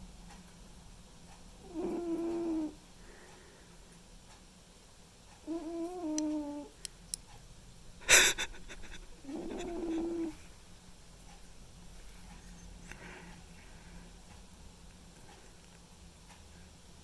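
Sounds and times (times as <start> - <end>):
cat snoring: 1.6 - 2.8, 5.4 - 6.7, 9.2 - 10.4.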